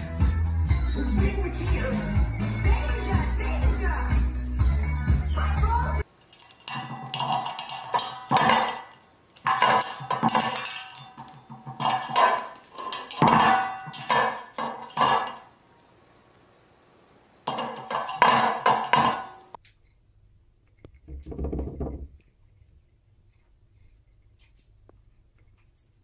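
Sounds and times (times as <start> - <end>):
music: 0.0 - 6.1
clinks and knocks: 6.1 - 15.6, 17.5 - 19.6.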